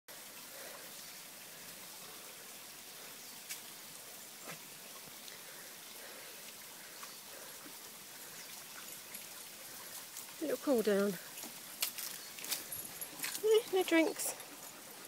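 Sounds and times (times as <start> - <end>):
running water hissing: 0.1 - 15.0
faint clicks and small splashes: 4.4 - 14.7.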